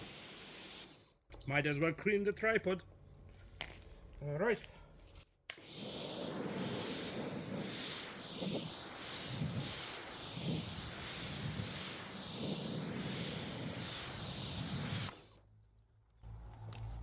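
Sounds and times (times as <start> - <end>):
pressure washer spraying: 5.6 - 15.4.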